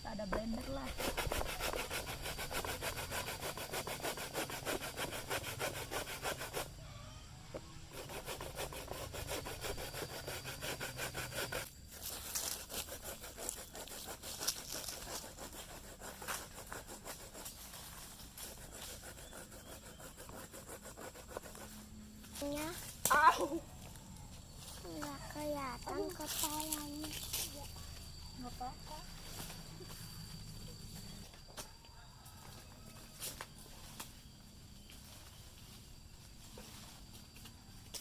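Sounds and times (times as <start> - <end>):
coconut grating rasps: 0.3 - 6.7, 7.9 - 17.6, 18.4 - 21.8.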